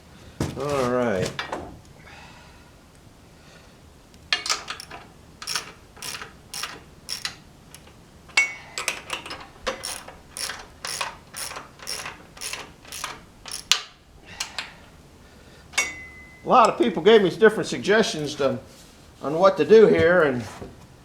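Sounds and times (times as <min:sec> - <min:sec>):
ratchet wrench clicking: 0:04.4 - 0:07.9, 0:09.1 - 0:13.9.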